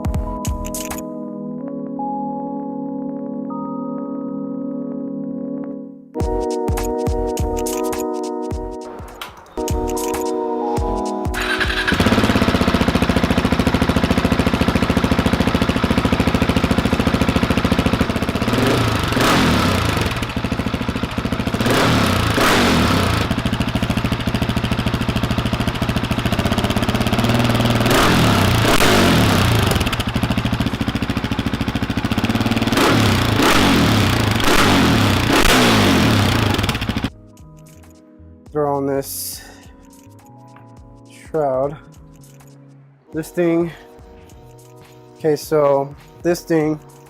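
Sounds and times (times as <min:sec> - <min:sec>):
motorcycle engine idling and revving: 0:10.8 - 0:37.2.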